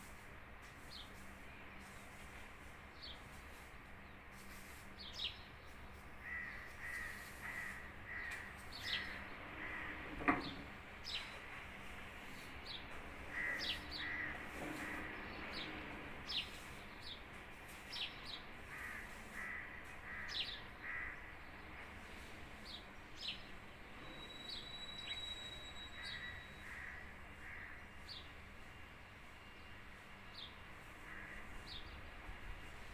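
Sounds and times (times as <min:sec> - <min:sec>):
harsh lower bird calls: 0:12.7 - 0:16.6.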